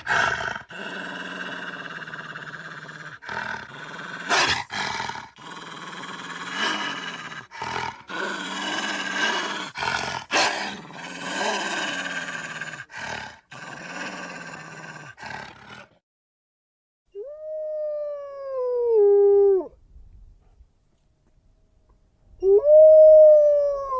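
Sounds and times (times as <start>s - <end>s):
wolf growling: 0.0s - 16.0s.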